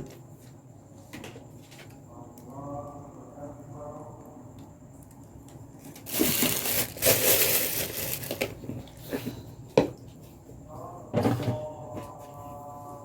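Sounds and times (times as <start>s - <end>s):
crinkling rustling handling noise: 5.8s - 9.4s.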